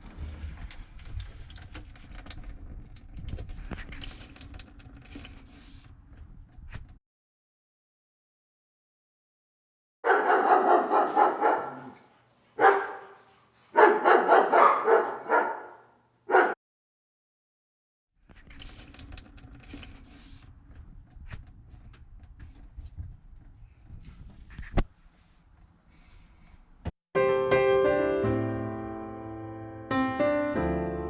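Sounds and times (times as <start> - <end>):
dog barking: 10.1 - 16.6.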